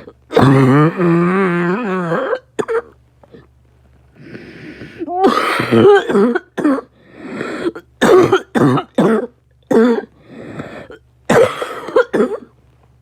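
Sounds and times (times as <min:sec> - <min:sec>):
person coughing harshly: 0:00.0 - 0:01.2, 0:02.1 - 0:02.9, 0:05.1 - 0:06.9, 0:07.5 - 0:10.1, 0:10.8 - 0:12.5
drawn-in breath: 0:04.2 - 0:05.1.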